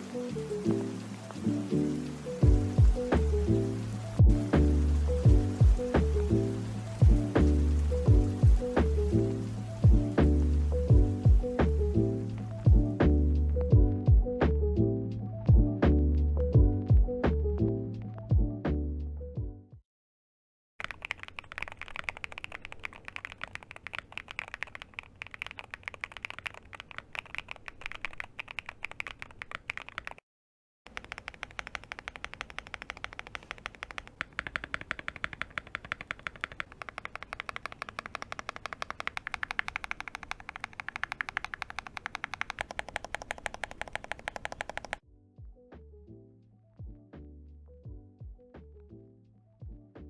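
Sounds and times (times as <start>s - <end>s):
fast mechanical keyboard typing: 2.4s - 3.6s, 4.2s - 9.1s, 20.8s - 30.2s, 30.9s - 45.0s.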